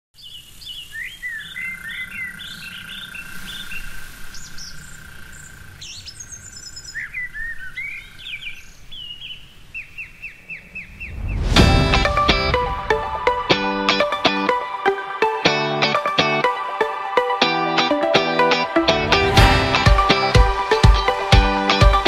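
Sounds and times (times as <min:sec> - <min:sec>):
birds singing and chirping: 0:00.2 - 0:11.6
steady high tone: 0:10.6 - 0:15.4.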